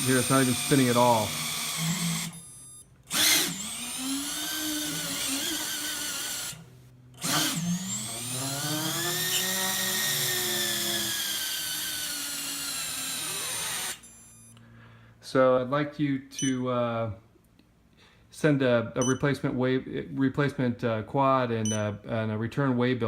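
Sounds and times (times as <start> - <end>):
quadcopter motors whining: 0.0 - 14.6.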